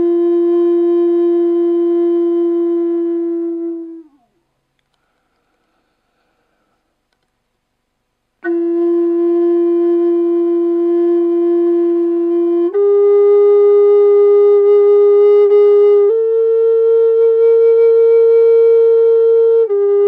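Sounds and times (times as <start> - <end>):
flute playing held notes: 0.0 - 4.4, 8.4 - 20.0.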